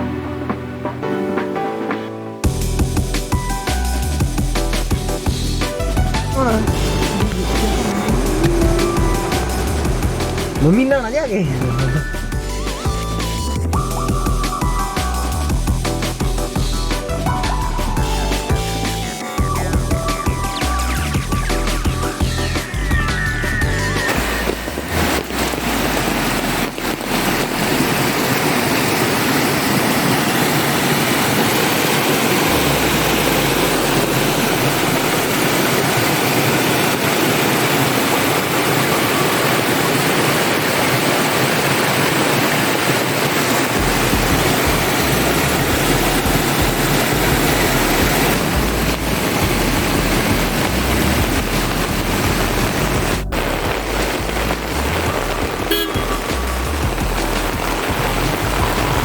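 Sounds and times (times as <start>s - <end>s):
rushing water: 2.4s - 59.0s
low rumble: 5.4s - 13.0s.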